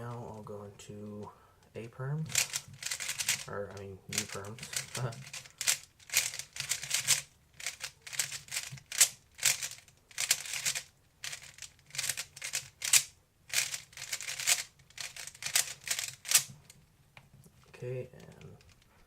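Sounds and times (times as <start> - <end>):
puzzle cube plastic clicking: 2.3 - 16.8.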